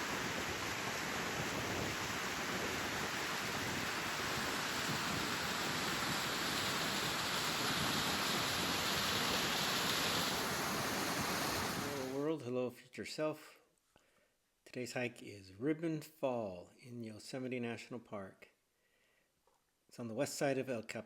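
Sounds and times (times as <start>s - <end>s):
waterfall rushing: 0.0s - 12.2s.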